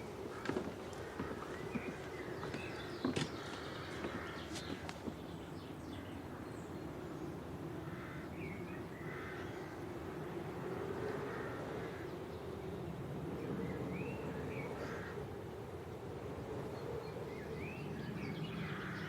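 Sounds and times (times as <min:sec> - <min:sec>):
outdoor background hum: 0:00.0 - 0:19.0
crows cawing: 0:00.3 - 0:02.0, 0:03.9 - 0:05.1, 0:07.8 - 0:08.3, 0:09.1 - 0:09.7, 0:14.8 - 0:15.2.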